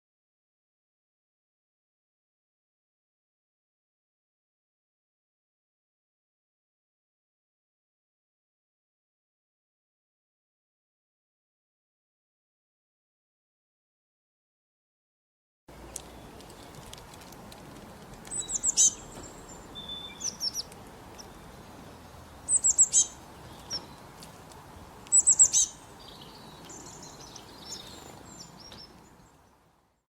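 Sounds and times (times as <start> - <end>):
faint background noise: 15.7 - 30.0
songbird singing: 15.7 - 30.0.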